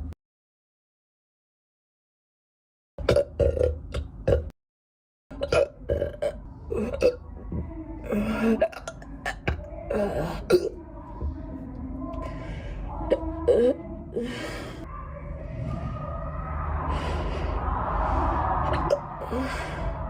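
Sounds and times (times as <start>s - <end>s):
person hiccuping and burping: 3.0s - 4.5s, 5.3s - 7.2s.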